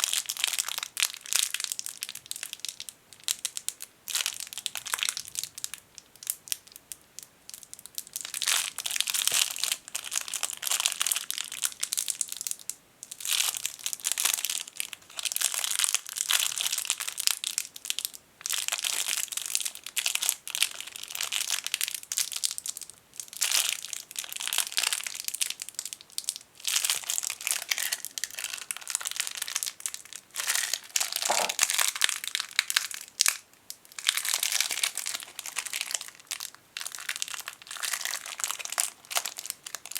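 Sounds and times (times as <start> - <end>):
plastic bag crinkling: 26.6 - 33.4, 34.0 - 39.9.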